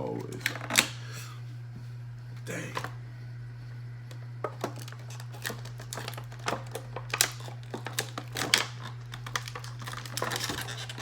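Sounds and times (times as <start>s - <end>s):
plastic packaging crinkling: 4.8s - 11.0s.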